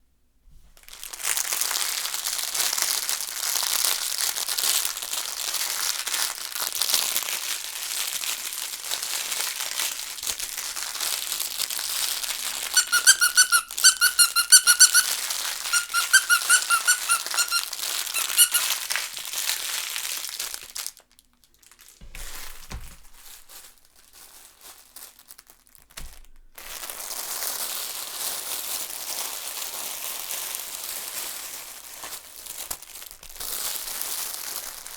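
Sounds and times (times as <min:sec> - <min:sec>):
crinkle toy rustling: 0:01.7 - 0:20.9, 0:23.1 - 0:25.7
quick high squeaks: 0:12.7 - 0:18.9.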